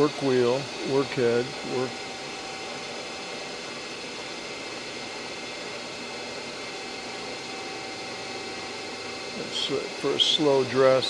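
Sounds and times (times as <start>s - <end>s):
grinder machine whirring: 0.0s - 11.0s.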